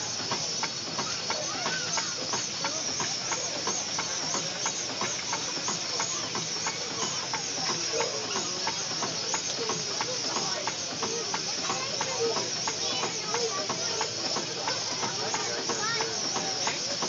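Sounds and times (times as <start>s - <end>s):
steam engine hissing: 0.0s - 17.0s.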